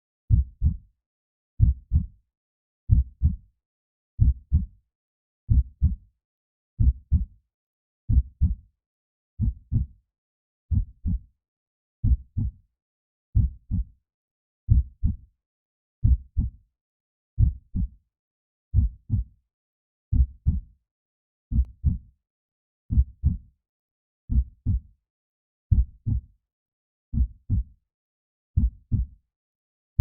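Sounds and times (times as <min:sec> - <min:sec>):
heartbeat thumps: 0:01.6 - 0:02.1, 0:18.8 - 0:19.2, 0:25.7 - 0:26.2, 0:28.6 - 0:29.1.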